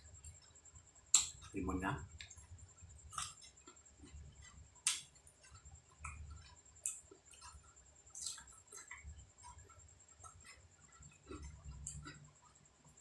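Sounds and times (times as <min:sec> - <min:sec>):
small ticks: 0:00.0 - 0:13.0
faint chewing: 0:00.2 - 0:13.0
sharp mouth clicks: 0:08.2 - 0:09.0.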